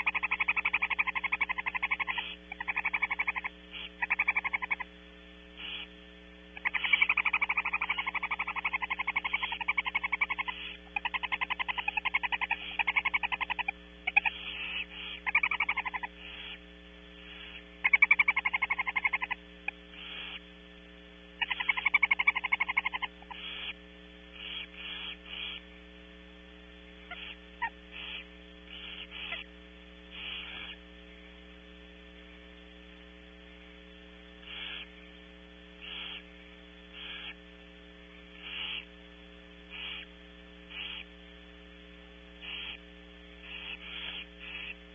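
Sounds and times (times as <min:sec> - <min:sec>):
owls chittering calls: 0:00.0 - 0:05.0, 0:05.6 - 0:20.5, 0:21.4 - 0:25.8, 0:26.9 - 0:30.9, 0:34.4 - 0:35.1, 0:35.8 - 0:37.6, 0:38.2 - 0:39.0, 0:39.6 - 0:41.2, 0:42.4 - 0:44.9
steady electrical hum: 0:00.0 - 0:44.9.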